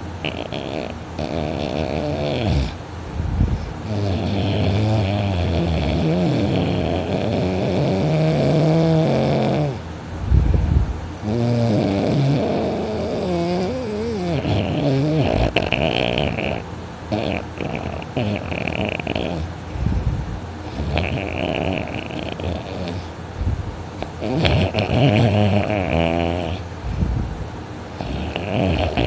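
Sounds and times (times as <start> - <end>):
person snoring loudly: 0.2 - 2.8, 3.8 - 9.8, 11.2 - 19.5, 20.7 - 23.1, 24.0 - 26.7, 28.0 - 29.0
low breath: 19.7 - 20.9, 26.8 - 27.4.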